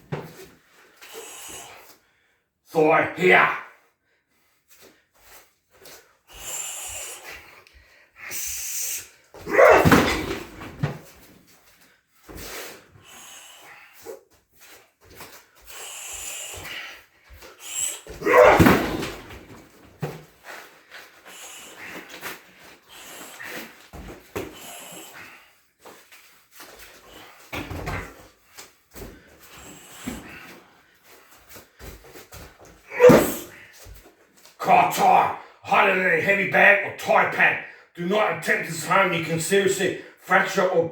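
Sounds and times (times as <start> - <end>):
kicks thudding into pad: 9.5 - 10.9, 18.2 - 19.5.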